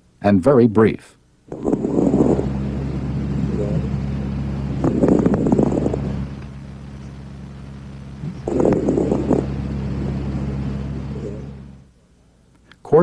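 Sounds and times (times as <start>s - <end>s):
steady low hum: 0.0s - 13.0s
fine crackling clicks: 4.8s - 9.6s.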